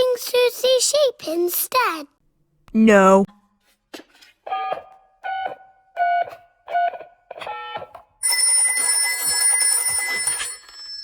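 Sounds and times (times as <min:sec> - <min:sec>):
telephone ringing: 0:08.2 - 0:11.0.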